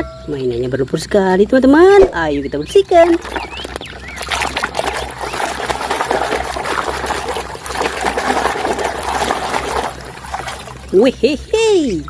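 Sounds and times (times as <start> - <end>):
water splashing and trickling: 2.6 - 11.6.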